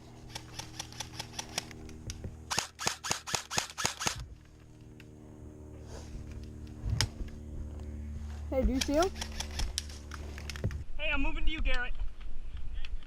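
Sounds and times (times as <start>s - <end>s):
airsoft guns firing rapid shots: 2.5s - 4.2s.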